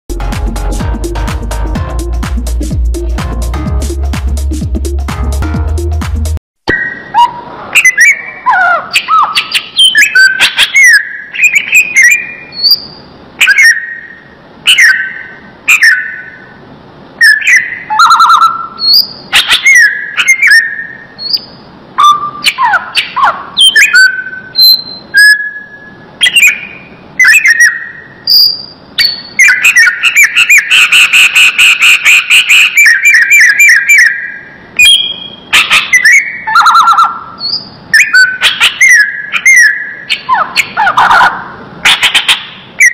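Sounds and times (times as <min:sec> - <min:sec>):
bird rapid trill: 0:06.7 - 0:16.5, 0:17.2 - 0:42.9
bird singing whistled phrases: 0:06.7 - 0:16.5, 0:17.2 - 0:40.8.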